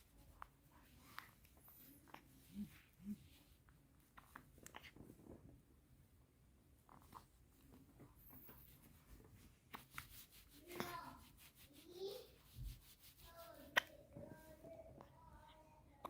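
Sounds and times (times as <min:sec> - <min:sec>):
faint clicks and rustles: 0:00.0 - 0:16.0
newborn baby vocal sounds: 0:01.2 - 0:03.4.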